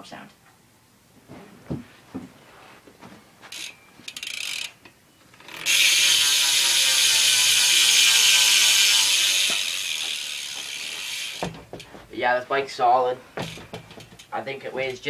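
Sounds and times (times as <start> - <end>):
bicycle hub freewheeling buzz: 3.5 - 11.9.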